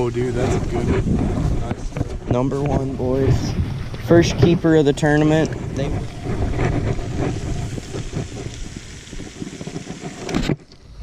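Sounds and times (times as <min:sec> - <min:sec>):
microphone handling knocks: 0:00.0 - 0:10.7
wind buffeting microphone: 0:00.0 - 0:11.0.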